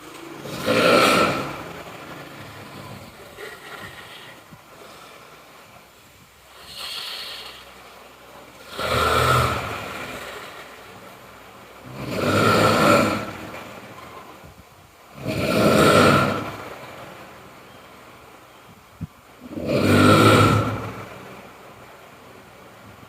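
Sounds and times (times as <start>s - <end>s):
person snoring loudly: 0.4s - 1.8s, 6.5s - 7.6s, 8.6s - 10.6s, 11.8s - 13.5s, 15.1s - 16.6s, 19.4s - 21.1s.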